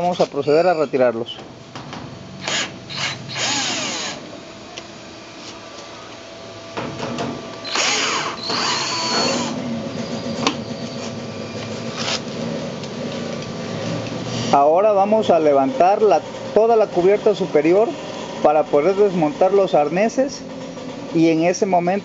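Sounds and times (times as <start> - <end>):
power drill running: 2.4 - 4.3, 7.6 - 10.3.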